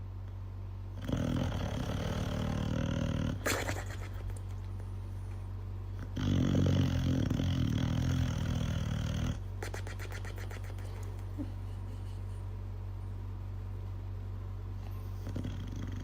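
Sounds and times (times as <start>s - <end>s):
steady low hum: 0.0s - 16.0s
dog making rough loud sound: 1.1s - 4.6s.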